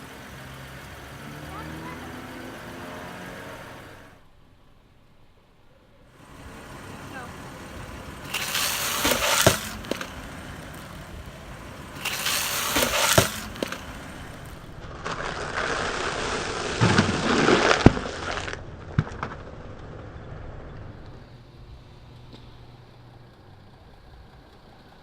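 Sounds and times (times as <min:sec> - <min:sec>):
tire crushing brittle object: 0:06.2 - 0:21.3.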